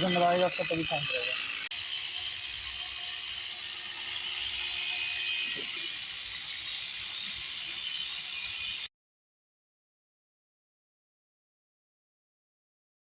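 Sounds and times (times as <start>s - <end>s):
electric clippers shearing fleece: 0.0s - 8.9s.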